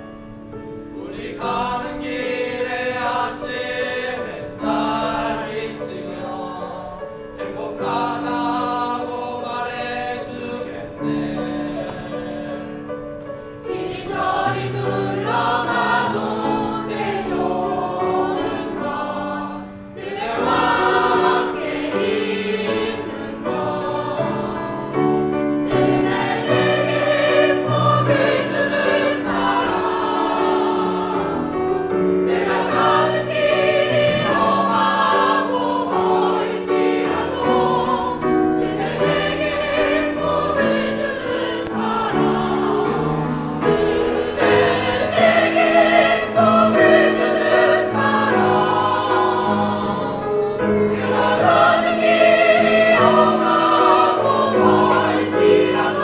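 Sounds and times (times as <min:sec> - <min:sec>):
choir singing: 0:00.0 - 0:56.0
piano accompaniment: 0:00.0 - 0:56.0.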